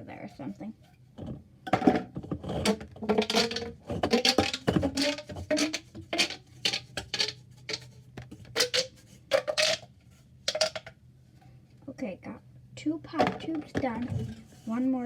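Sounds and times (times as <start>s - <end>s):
plastic pop tubes popping: 1.7s - 9.9s, 10.5s - 11.0s.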